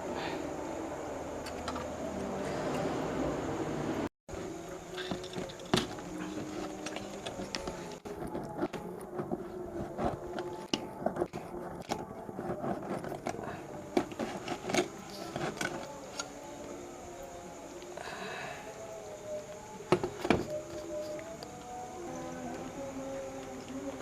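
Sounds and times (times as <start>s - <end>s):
handling clicks taps and scrapes: 4.9s - 16.3s.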